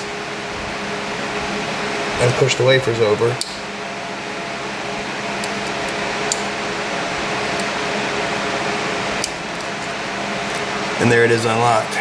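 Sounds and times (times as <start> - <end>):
ventilation hum: 0.0 - 12.0.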